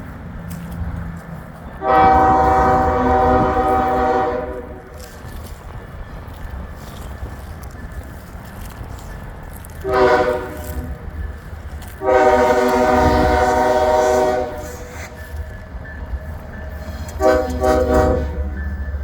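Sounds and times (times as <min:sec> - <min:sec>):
locomotive multi-chime air horn: 0:01.7 - 0:05.1, 0:09.8 - 0:19.0.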